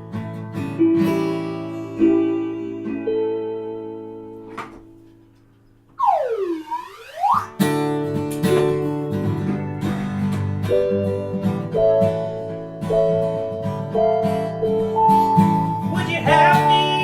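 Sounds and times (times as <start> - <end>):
strummed acoustic guitar: 0.0 - 5.6, 7.4 - 17.0
swooping pitched sound: 6.0 - 7.7.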